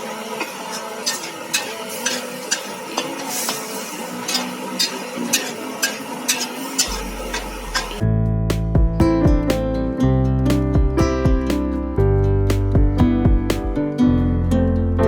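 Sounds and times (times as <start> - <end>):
food sizzling in a pan: 0.0 - 8.0
utensil scraping a pan: 0.7 - 8.0.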